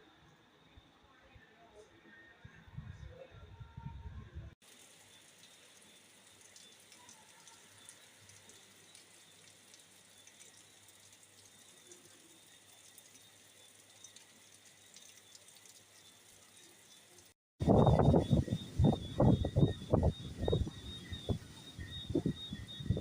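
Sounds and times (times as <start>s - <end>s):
faint steady hiss: 4.6s - 17.3s.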